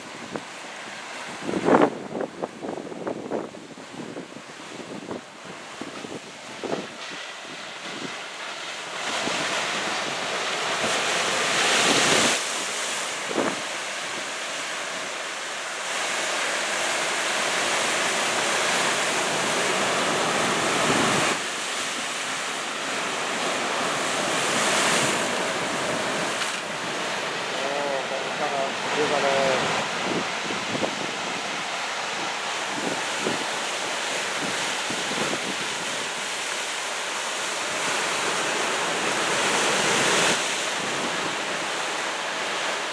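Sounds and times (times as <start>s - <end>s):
surf breaking on shore: 0.0s - 42.9s
wind buffeting microphone: 1.2s - 8.2s, 29.0s - 36.4s.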